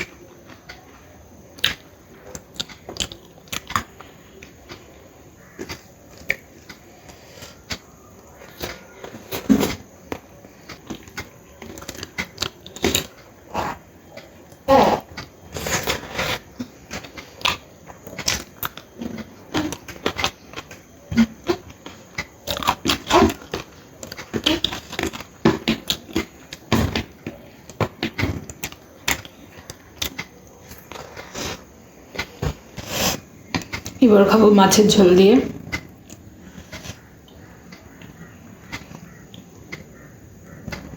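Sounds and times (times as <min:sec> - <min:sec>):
person chewing and crunching: 0:01.6 - 0:33.1.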